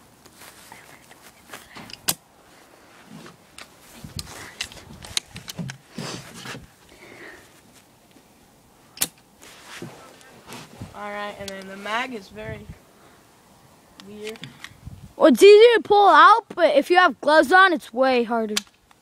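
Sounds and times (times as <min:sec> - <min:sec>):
spring rifle firing snaps: 0:09.0 - 0:09.2.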